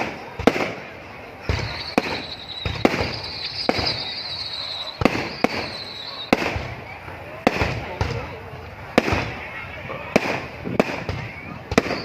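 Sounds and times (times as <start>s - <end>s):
fireworks bangs: 0.0s - 12.0s
high steady whistle: 1.5s - 6.4s.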